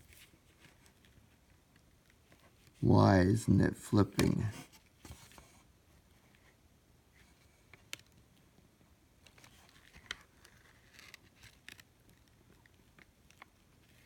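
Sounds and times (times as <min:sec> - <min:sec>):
paper rustling: 0:09.3 - 0:14.0.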